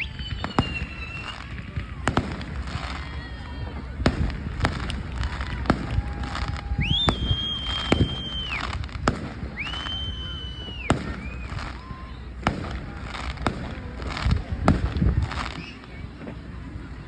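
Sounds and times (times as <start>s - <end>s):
high-pitched firework whistles: 0.0s - 4.9s, 5.6s - 12.7s, 15.3s - 16.0s
firework bangs and pops: 0.0s - 16.4s.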